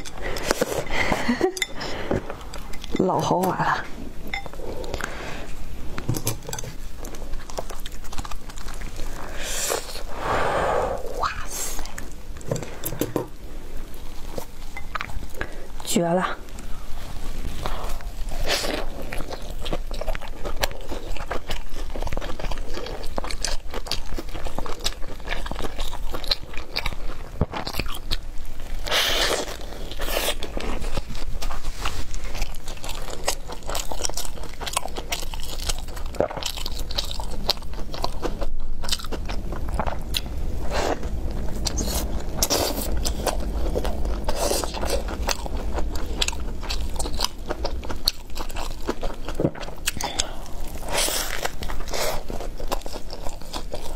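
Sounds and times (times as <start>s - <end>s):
crunchy bites and chewing: 18.0s - 40.3s.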